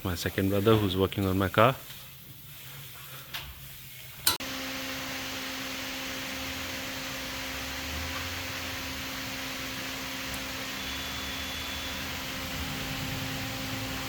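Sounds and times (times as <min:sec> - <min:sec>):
mechanical hum with hiss: 0:04.2 - 0:14.0.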